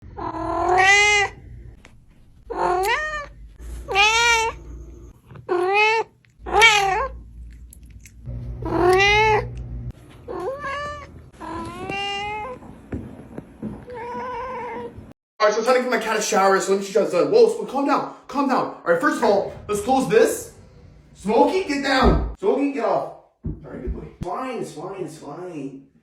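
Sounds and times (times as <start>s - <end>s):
cat meowing: 0.1s - 1.4s, 2.5s - 4.7s, 5.4s - 7.2s, 8.6s - 9.5s, 10.2s - 12.6s, 13.8s - 15.0s.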